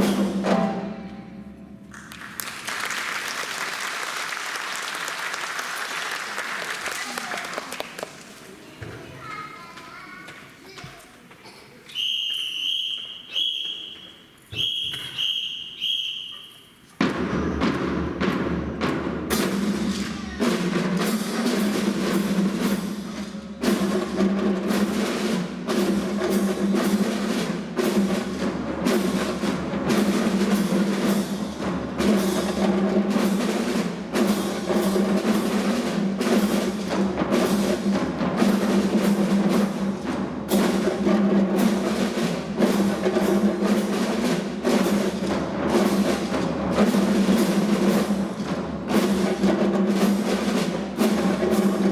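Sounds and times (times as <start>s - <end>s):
upbeat music with drum beat: 17.0s - 51.9s.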